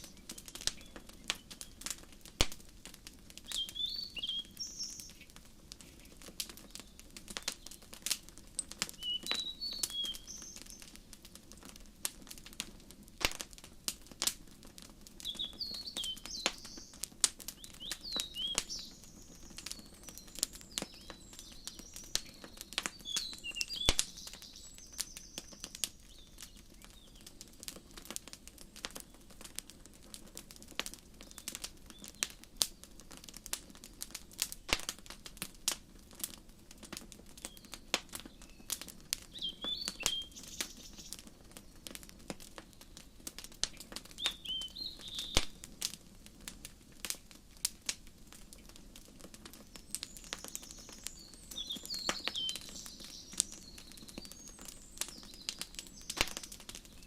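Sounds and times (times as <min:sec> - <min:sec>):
birds chirping: 0:00.0 - 0:01.9, 0:03.4 - 0:08.0, 0:08.6 - 0:11.0, 0:15.2 - 0:27.4, 0:37.4 - 0:41.9, 0:42.5 - 0:45.7, 0:49.6 - 0:57.0
wood fire crackling and popping: 0:00.0 - 0:57.0.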